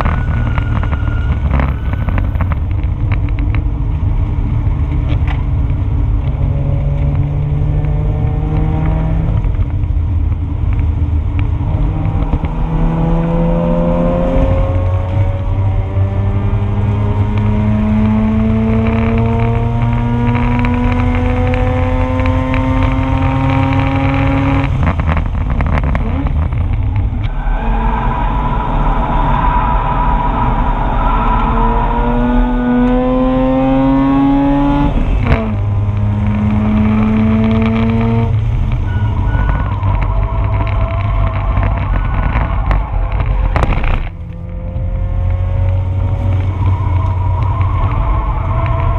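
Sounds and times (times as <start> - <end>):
rotary engine accelerating: 4.0 - 48.9.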